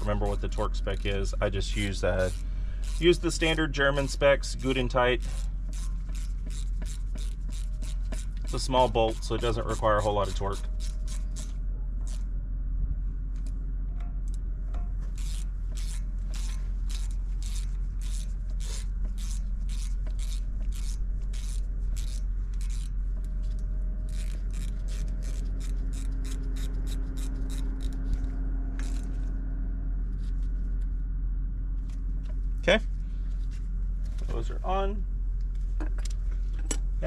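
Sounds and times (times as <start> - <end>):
steady low hum: 0.0 - 37.0
hand ratchet clicking: 0.4 - 3.6, 4.5 - 12.2, 15.1 - 23.3, 24.1 - 28.2.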